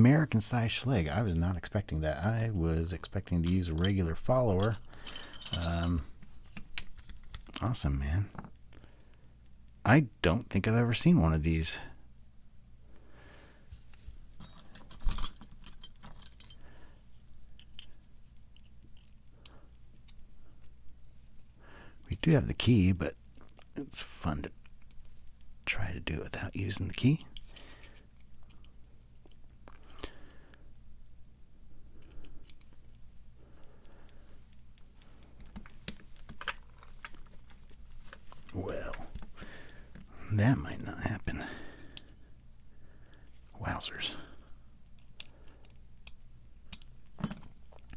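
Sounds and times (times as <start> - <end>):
small metal pieces jangling: 3.4 - 6.1, 14.4 - 16.6, 47.2 - 47.6.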